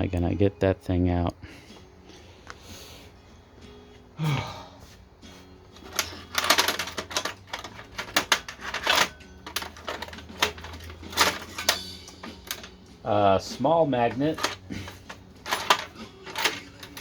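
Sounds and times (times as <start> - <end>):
metal tools clicking and clattering: 5.8 - 12.9, 13.9 - 17.0.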